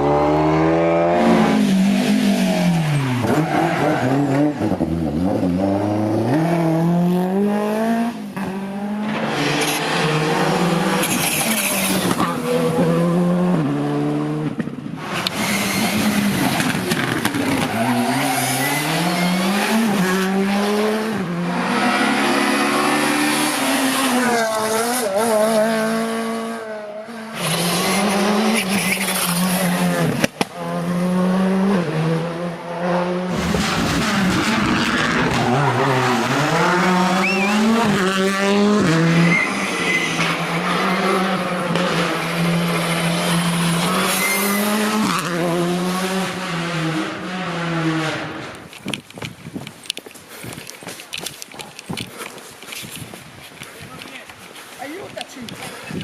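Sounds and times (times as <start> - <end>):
rally car engines revving: 0.0 - 48.7
tyre squeal and skidding: 2.4 - 4.5, 10.9 - 12.6, 15.4 - 19.8, 27.4 - 30.2, 33.4 - 38.0, 39.1 - 41.2, 43.3 - 45.1.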